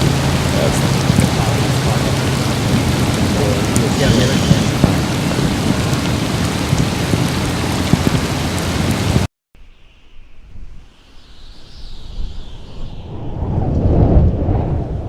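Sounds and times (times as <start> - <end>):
rain: 0.0 - 9.3
wind rushing: 0.0 - 9.3, 10.2 - 15.0.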